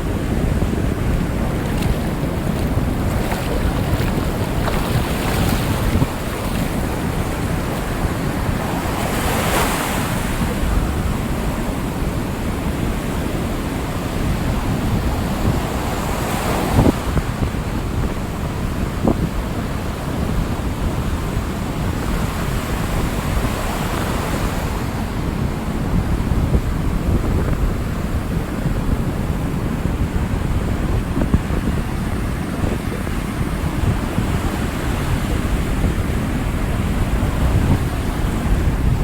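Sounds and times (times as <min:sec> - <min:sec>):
ocean waves breaking: 0:00.0 - 0:17.4
wind buffeting microphone: 0:00.0 - 0:39.0.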